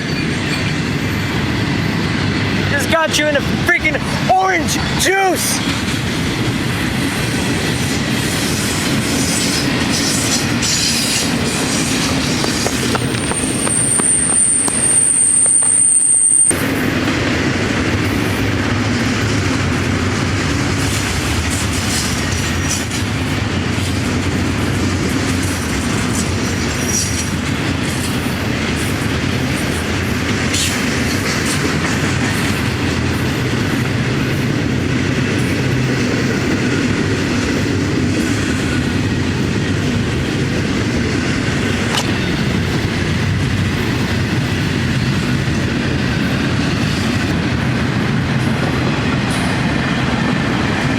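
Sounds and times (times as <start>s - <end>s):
train rumbling past: 0.0s - 50.9s
wheels clattering over rail joints: 5.7s - 15.6s.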